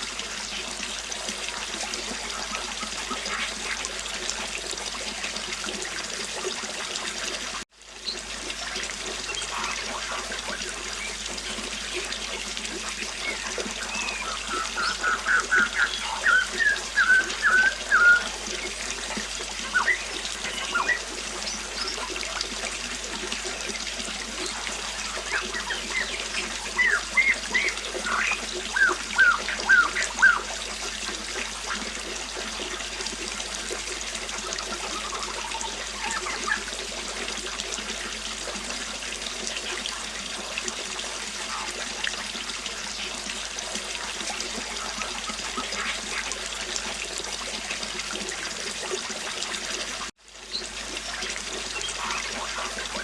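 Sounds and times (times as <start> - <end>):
river water flowing: 0.0 - 53.0
songbird chirping: 13.2 - 19.0, 19.6 - 22.1, 24.4 - 30.5.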